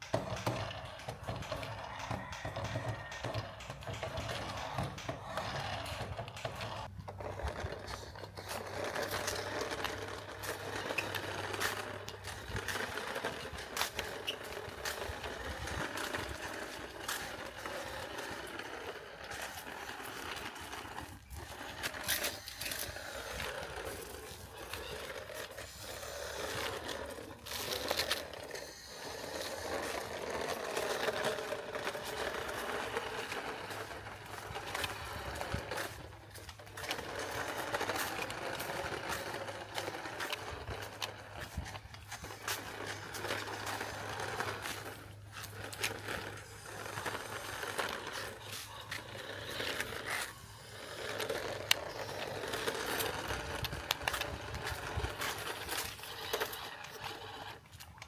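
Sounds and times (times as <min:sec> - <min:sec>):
toy car motor whirring: 0:00.0 - 0:58.0
wheels scraping and clicking: 0:00.0 - 0:58.0.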